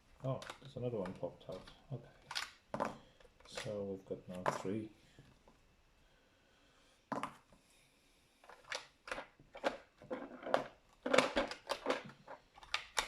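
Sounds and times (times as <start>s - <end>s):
plastic bricks clicking and clattering: 0.3s - 3.7s, 8.5s - 13.0s.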